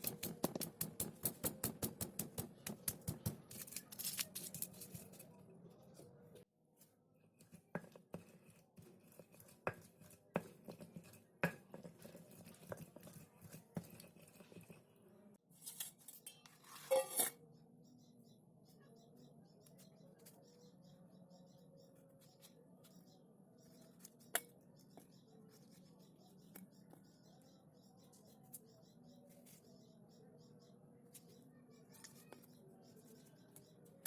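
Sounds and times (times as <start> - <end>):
dishes and utensils clinking: 16.1 - 17.4.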